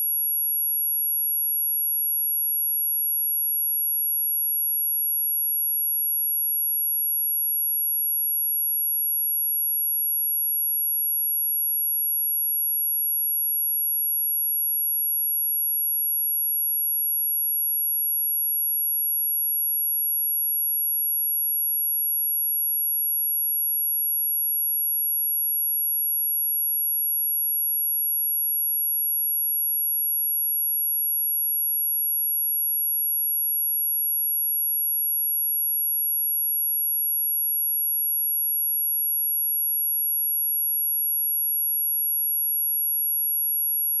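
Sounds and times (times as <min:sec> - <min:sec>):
high-pitched sine test tone: 0:00.0 - 0:01.7, 0:19.1 - 0:44.0.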